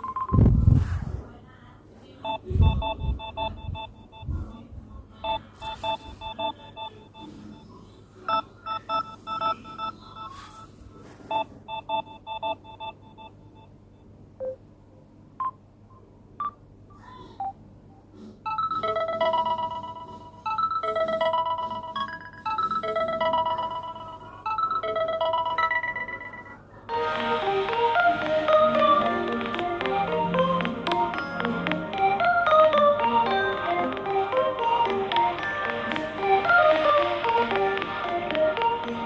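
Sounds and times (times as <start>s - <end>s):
phone ringtone beeps: 2.3s - 4.6s, 5.2s - 7.7s, 11.3s - 13.8s, 18.5s - 27.2s
ringtone melody: 18.5s - 39.0s.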